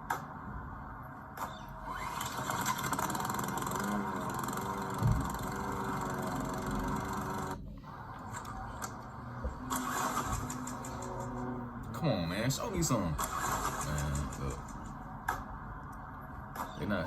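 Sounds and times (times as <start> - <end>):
lawn mower engine running: 2.2 - 7.6.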